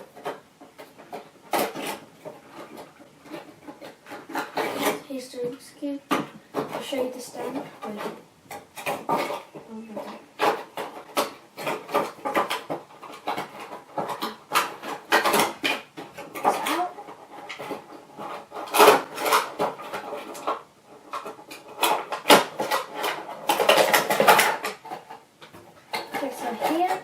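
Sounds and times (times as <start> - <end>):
packaging rustling: 0.0 - 27.0.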